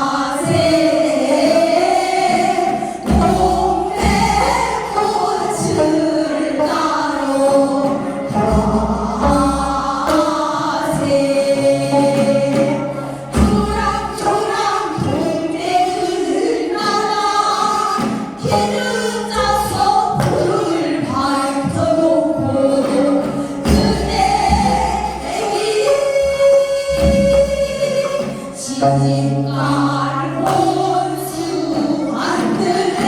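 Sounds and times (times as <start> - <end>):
group singing folk song: 0.0 - 33.0
heavy drum strokes: 0.0 - 33.0.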